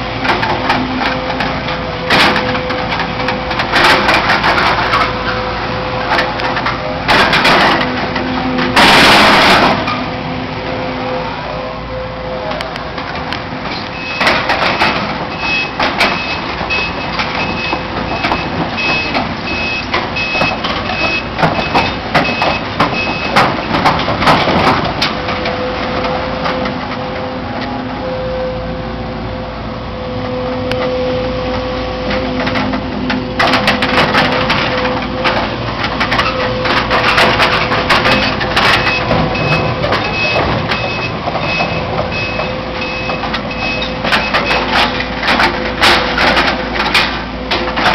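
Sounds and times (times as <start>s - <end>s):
reversing alarm beeping: 13.9s - 23.8s, 36.4s - 45.0s.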